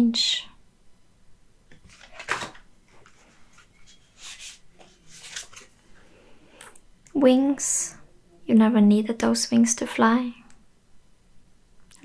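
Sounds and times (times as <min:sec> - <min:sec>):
cards sliding and rustling: 0:01.7 - 0:06.2.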